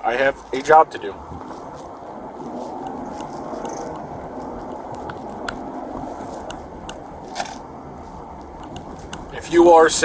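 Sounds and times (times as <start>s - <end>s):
car interior rumble: 0.0s - 10.0s
small clicks and ticks: 2.7s - 5.7s, 6.4s - 9.3s.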